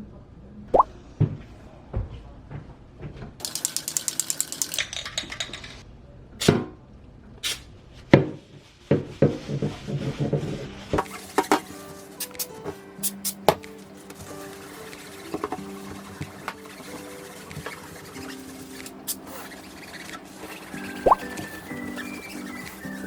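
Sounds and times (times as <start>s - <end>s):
kitchen objects knocking and tapping: 3.4s - 5.8s.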